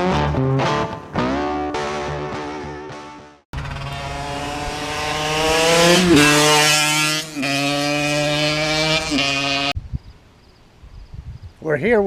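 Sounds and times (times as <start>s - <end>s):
scooter engine revving: 3.6s - 9.8s.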